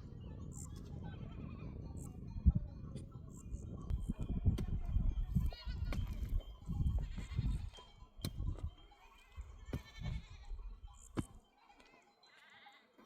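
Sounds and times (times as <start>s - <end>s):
goats bleating: 5.5s - 6.0s, 9.7s - 10.5s, 11.6s - 13.0s.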